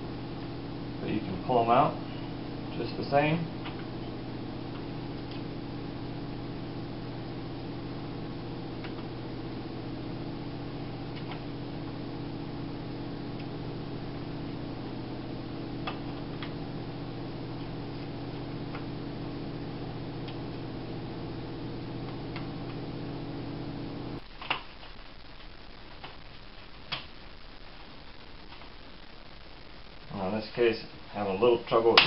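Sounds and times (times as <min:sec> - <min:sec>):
low hum: 0:00.0 - 0:24.3.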